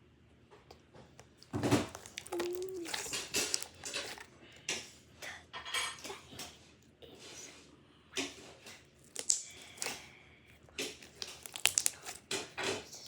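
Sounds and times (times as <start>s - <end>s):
small objects clicking and rustling: 1.2s - 4.3s, 9.0s - 10.0s, 10.8s - 13.0s.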